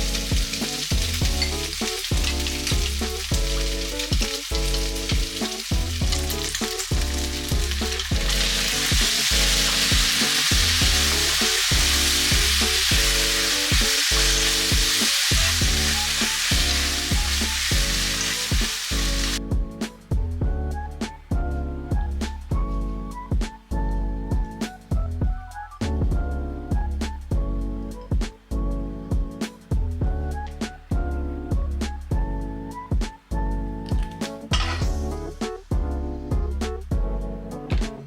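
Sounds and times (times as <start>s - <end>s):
food sizzling in a frying pan: 0.0s - 19.4s
background music with a beat: 0.0s - 38.0s.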